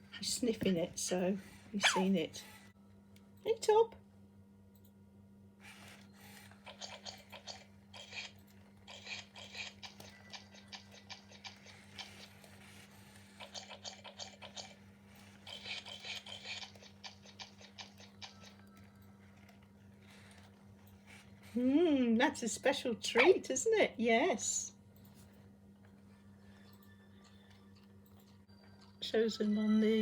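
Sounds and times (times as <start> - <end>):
robot dog clicking and gnashing: 6.6 - 12.6, 13.2 - 20.5.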